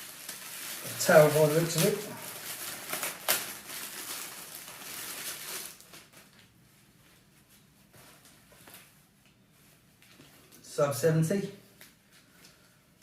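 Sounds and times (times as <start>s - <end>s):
packaging rustling: 0.0s - 6.5s.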